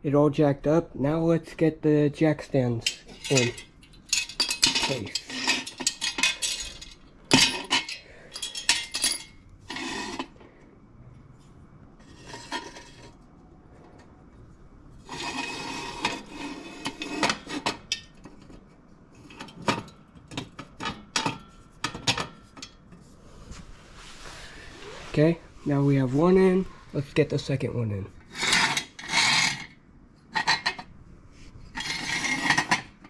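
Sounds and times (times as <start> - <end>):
metal clanks and clinks: 2.8 - 10.3
metal scraping: 2.8 - 10.4, 12.0 - 13.3, 15.0 - 18.2, 28.1 - 29.8, 31.7 - 33.0.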